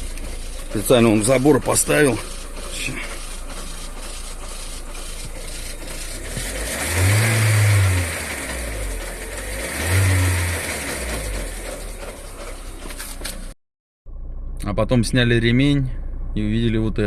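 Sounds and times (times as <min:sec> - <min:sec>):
car engine revving: 0:00.0 - 0:13.5.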